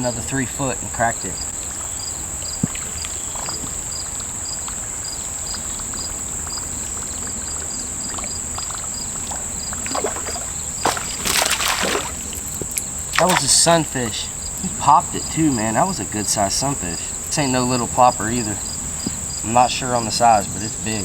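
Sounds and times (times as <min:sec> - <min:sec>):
cricket chirping: 0:00.0 - 0:21.0
insect drone: 0:00.0 - 0:21.0
fish splashing at water surface: 0:08.1 - 0:14.2.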